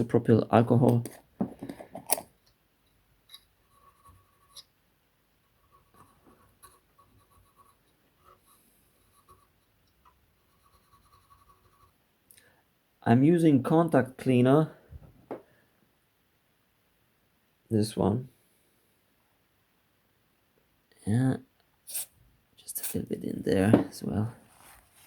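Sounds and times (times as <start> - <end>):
cotton swab rubbing: 21.9 - 22.1.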